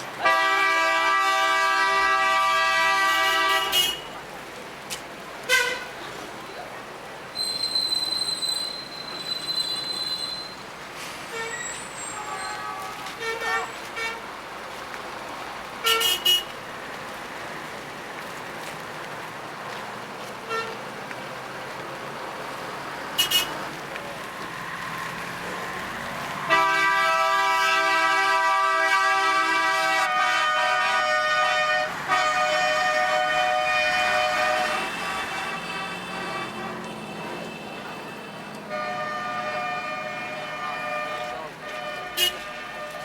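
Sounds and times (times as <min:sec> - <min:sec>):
passing traffic hum: 0:00.0 - 0:43.0
car horn toots: 0:00.2 - 0:04.2, 0:15.8 - 0:16.6, 0:23.2 - 0:23.6, 0:26.5 - 0:43.0
long car horn blast: 0:00.2 - 0:04.2, 0:15.8 - 0:16.5, 0:23.2 - 0:23.6, 0:26.5 - 0:43.0.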